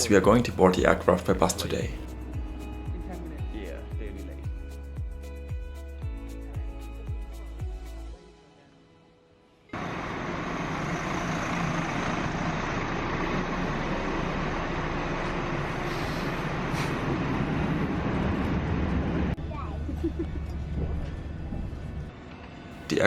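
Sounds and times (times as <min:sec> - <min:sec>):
bus engine rumbling: 0:00.0 - 0:02.0, 0:09.8 - 0:22.2.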